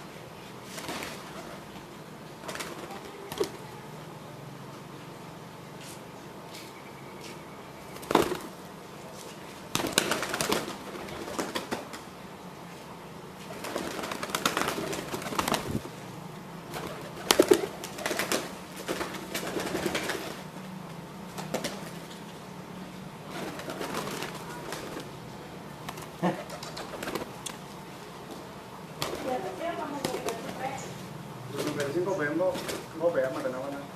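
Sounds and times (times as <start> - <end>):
pigeons cooing: 25.9 - 27.4.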